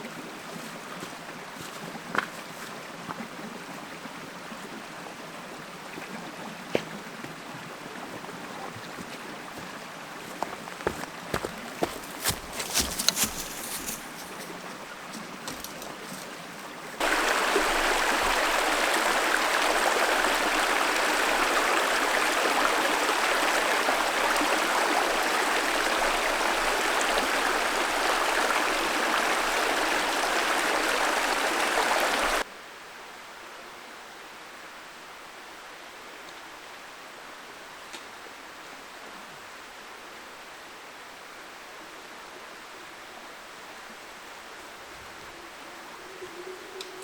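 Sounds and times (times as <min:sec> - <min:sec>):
running water rushing: 0:00.0 - 0:32.5.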